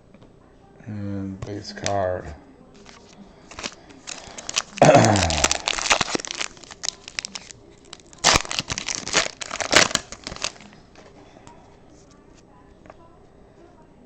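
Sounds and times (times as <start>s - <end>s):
wrapper crinkling: 2.8s - 11.1s.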